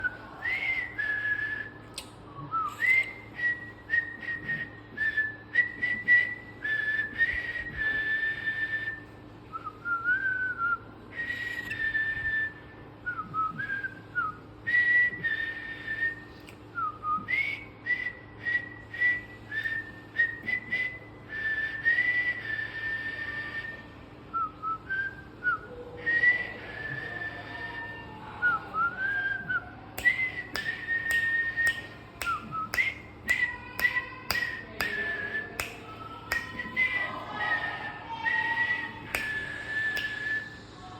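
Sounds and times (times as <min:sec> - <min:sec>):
faint steady hum: 0:00.0 - 0:40.9
cockatiel whistling a tune: 0:09.6 - 0:12.5.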